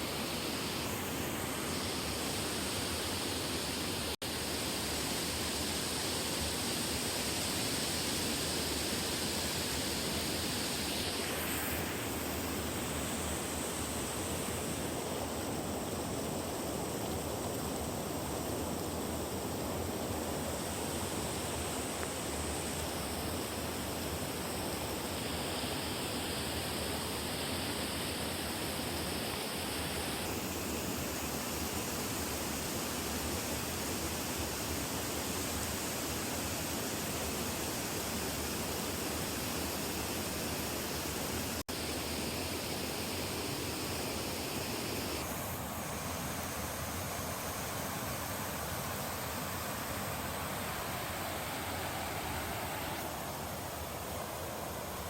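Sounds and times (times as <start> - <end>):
steady rushing noise: 9.8 - 16.9, 48.8 - 55.0.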